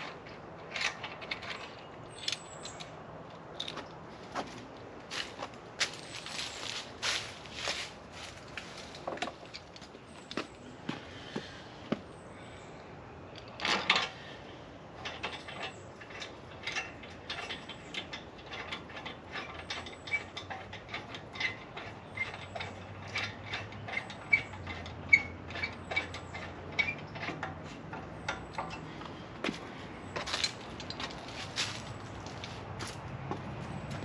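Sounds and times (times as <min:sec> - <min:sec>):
small hard parts clicking: 0:00.0 - 0:04.0, 0:15.0 - 0:32.6.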